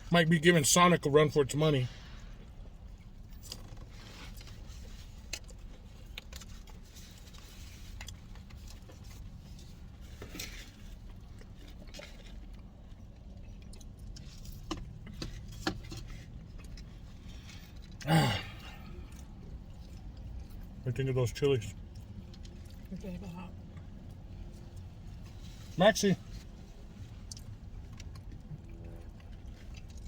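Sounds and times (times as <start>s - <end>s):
quiet chewing: 1.9s - 20.8s, 21.5s - 30.0s.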